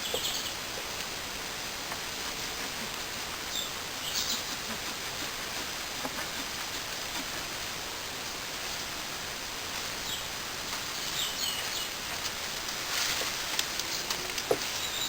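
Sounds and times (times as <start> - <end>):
bird chirping: 0.0 - 0.6, 3.5 - 4.6
outdoor background hiss: 0.0 - 15.0.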